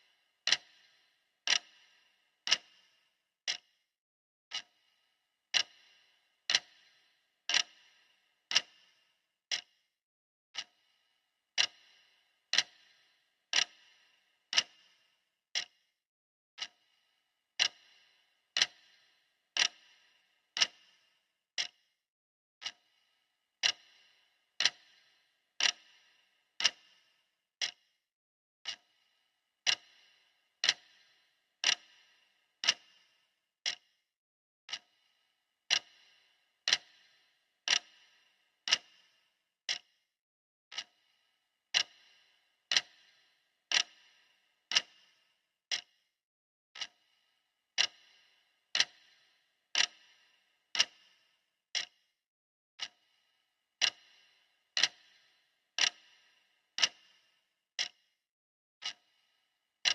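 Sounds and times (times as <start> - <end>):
clock ticking: 0.0 - 3.7, 4.5 - 9.7, 10.6 - 15.8, 16.6 - 17.0, 17.6 - 21.9, 22.6 - 23.0, 23.6 - 28.0, 28.6 - 29.0, 29.6 - 34.0, 34.7 - 35.1, 35.7 - 40.0, 40.7 - 46.0, 46.8 - 52.0, 52.8 - 58.1, 58.8 - 59.9.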